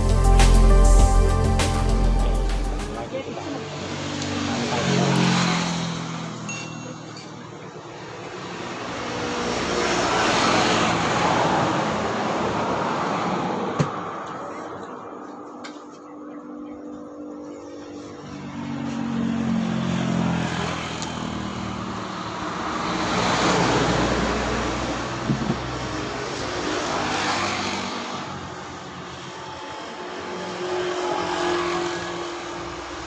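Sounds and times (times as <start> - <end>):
vehicles passing: 0.0 - 33.0
short knock: 25.2 - 25.7.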